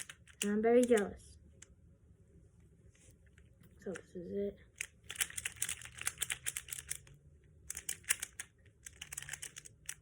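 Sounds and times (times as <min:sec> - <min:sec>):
plastic puzzle pieces clicking: 0:00.0 - 0:01.1, 0:04.8 - 0:10.0.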